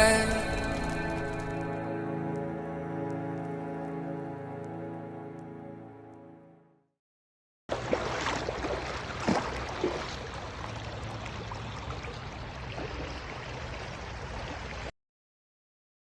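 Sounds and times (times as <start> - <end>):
low hum: 0.0 - 6.2.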